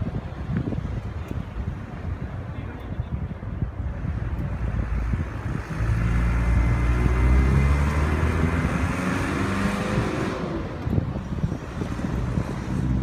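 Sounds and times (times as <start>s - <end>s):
vehicle engine passing by: 4.6s - 13.0s.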